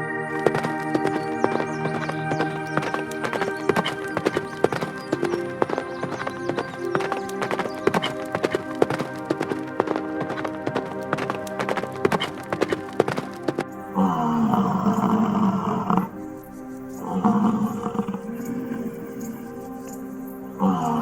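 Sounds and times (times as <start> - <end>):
background music: 0.0 - 21.0
horse hooves clip-clopping: 0.3 - 16.2.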